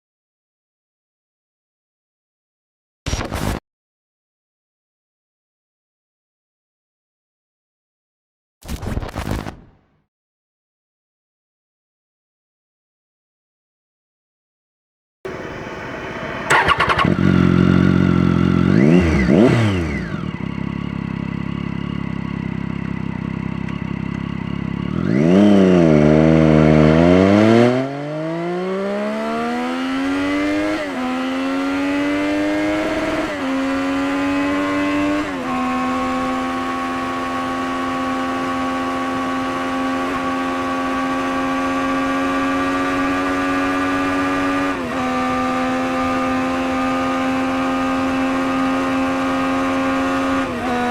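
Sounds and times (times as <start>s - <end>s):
motorcycle engine revving: 15.3s - 50.9s.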